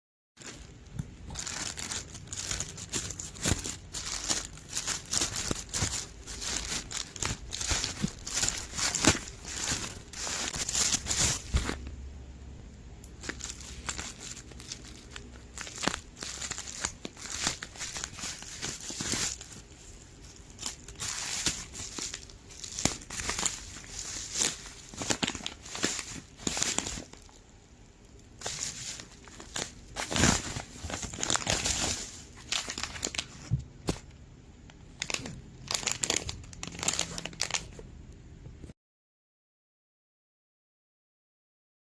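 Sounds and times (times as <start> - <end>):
plastic packaging crinkling: 0.4 - 11.9, 13.1 - 27.5, 28.1 - 34.0, 34.8 - 37.8.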